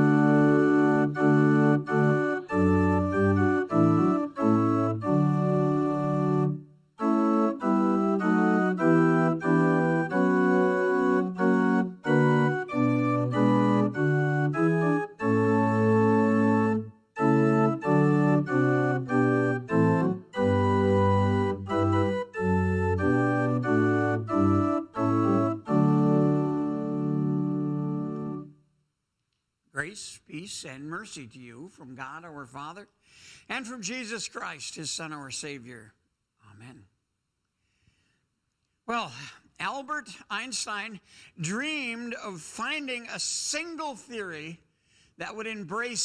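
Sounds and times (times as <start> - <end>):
church organ playing a hymn: 0.0 - 28.5.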